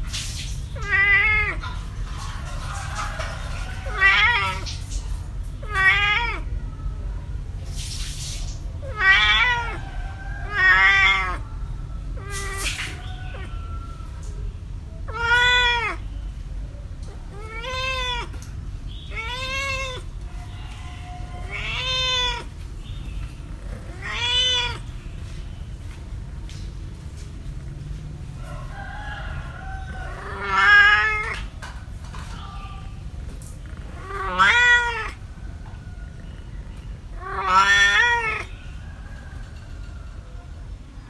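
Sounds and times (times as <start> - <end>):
cat meowing: 0.8 - 1.8, 2.9 - 4.8, 5.6 - 6.8, 8.8 - 11.4, 12.2 - 14.3, 15.0 - 16.2, 17.0 - 22.6, 23.4 - 25.1, 29.6 - 31.6, 33.6 - 35.3, 36.1 - 38.6
steady low rumble: 12.9 - 37.2.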